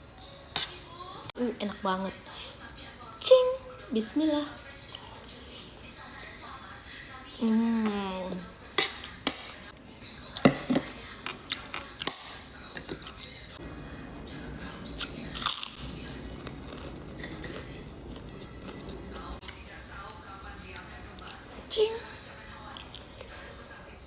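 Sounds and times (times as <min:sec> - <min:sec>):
chewing and crunching food: 0:08.4 - 0:13.6, 0:14.3 - 0:23.7.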